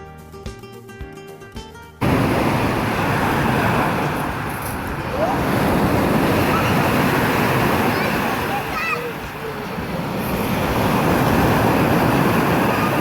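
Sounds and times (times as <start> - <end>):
song with guitar: 0.0 - 2.2
outdoor rushing noise with rumble: 2.0 - 13.0.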